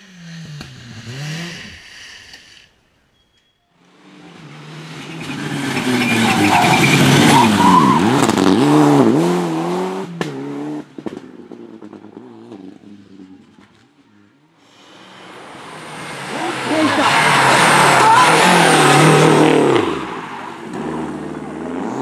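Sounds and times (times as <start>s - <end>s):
rally car engine passing at speed: 4.0s - 13.8s, 14.8s - 22.0s.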